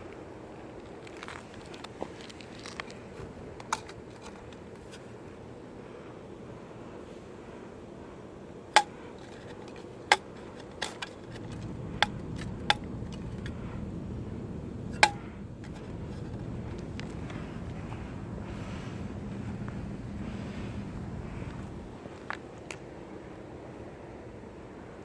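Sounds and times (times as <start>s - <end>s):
low rumble: 11.2s - 22.1s
sharp metallic knocks: 15.0s - 15.3s.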